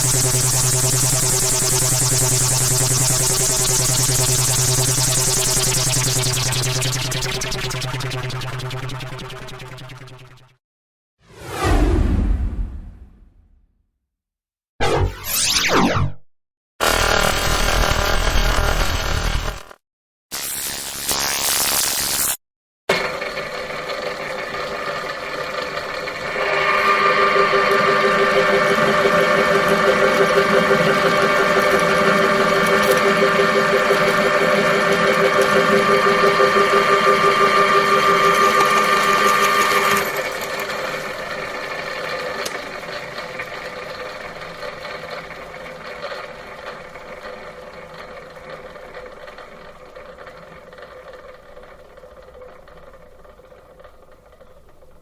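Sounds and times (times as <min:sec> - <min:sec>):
synthesized machine hum: 0:00.0 - 0:10.6, 0:14.8 - 0:16.2, 0:27.4 - 0:40.4.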